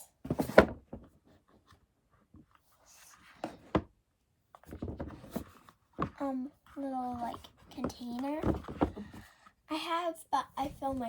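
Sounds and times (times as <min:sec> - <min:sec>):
scraping and rustling: 0:04.6 - 0:09.5.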